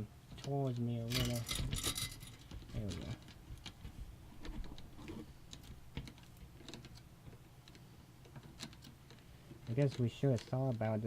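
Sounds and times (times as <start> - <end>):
computer parts clicking and tapping: 4.4 - 11.0.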